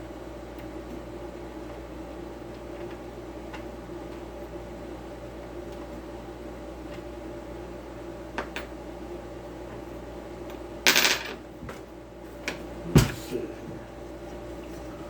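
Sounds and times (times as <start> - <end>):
steady low hum: 10.8 - 15.0.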